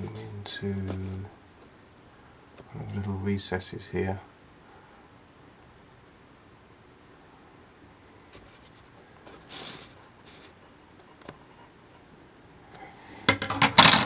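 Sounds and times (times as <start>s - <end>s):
soft rustle: 0.0s - 1.8s, 8.1s - 12.1s.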